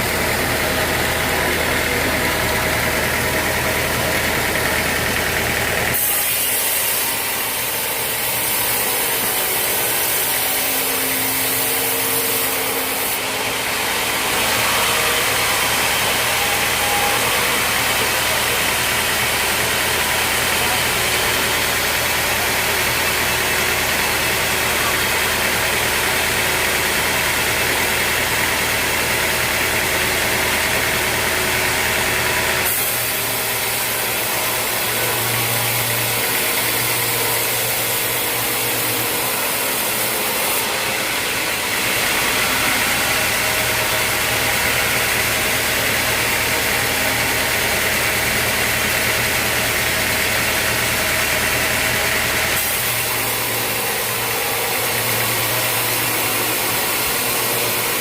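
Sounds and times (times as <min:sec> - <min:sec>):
sawmill machinery engine drone: 0:00.0 - 0:58.0.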